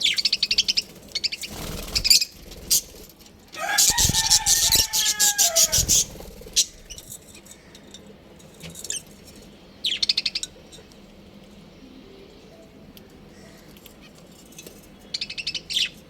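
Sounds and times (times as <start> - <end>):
budgies chirping and chattering: 0.0 - 7.1.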